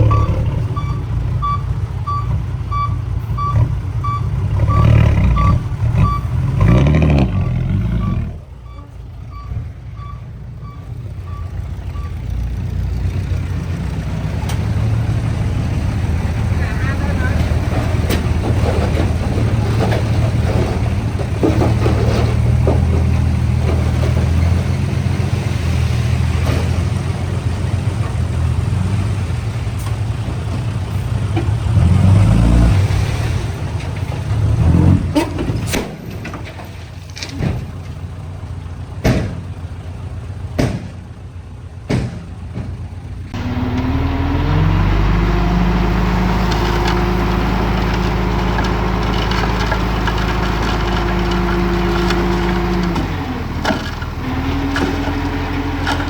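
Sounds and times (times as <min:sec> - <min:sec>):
engine revving up: 0:00.0 - 0:01.0, 0:04.4 - 0:08.4, 0:31.6 - 0:33.5, 0:43.3 - 0:56.0
diesel engine running: 0:00.0 - 0:56.0.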